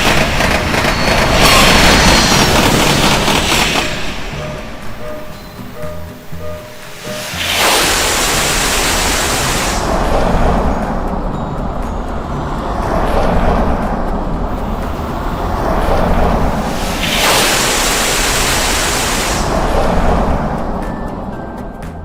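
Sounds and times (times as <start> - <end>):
loud rushing hiss: 0.0 - 11.1, 14.4 - 20.8
train rumbling past: 0.0 - 22.0.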